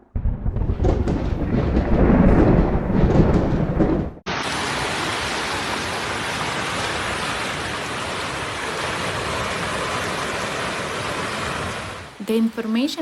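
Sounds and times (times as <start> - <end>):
heavy rain downpour: 4.3 - 12.2.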